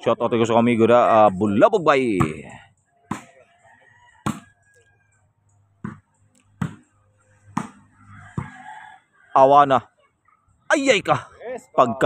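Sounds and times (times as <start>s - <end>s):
hands smacking volleyball: 3.1s - 3.4s, 4.2s - 4.6s, 5.8s - 6.9s, 7.5s - 7.8s.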